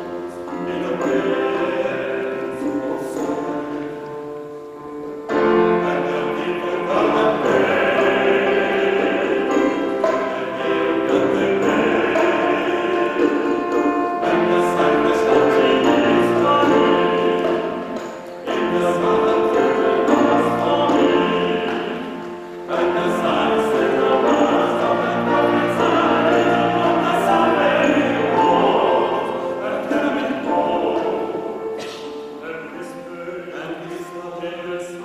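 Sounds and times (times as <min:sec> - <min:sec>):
male vocal ensemble singing: 0:00.0 - 0:04.2, 0:05.3 - 0:35.0.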